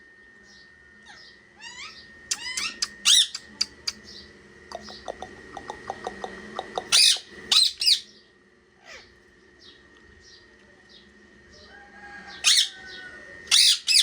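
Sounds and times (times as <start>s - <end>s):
parrot chirps: 1.1s - 4.0s, 4.7s - 8.1s, 13.5s - 14.0s
parrot squawking: 1.1s - 4.0s, 4.8s - 8.1s, 12.4s - 14.0s.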